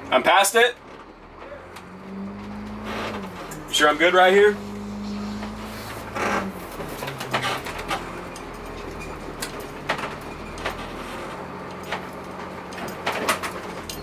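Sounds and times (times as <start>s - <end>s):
bus engine idling: 0.0s - 14.0s.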